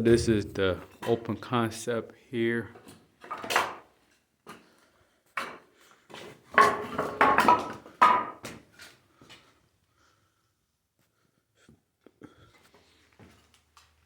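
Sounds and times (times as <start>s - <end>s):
knocks and clattering: 6.5s - 8.6s.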